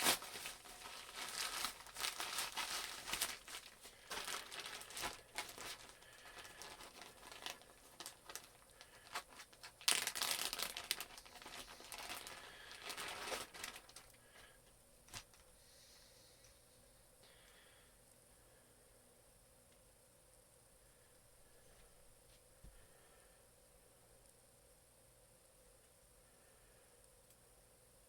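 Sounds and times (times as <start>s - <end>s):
packaging crinkling and tearing: 0.0s - 14.5s, 15.1s - 15.5s.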